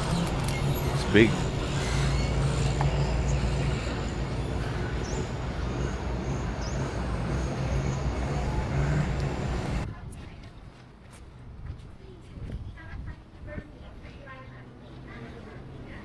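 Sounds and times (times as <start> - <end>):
motor vehicle engine hum: 0.0 - 10.6
street noise: 0.0 - 16.0.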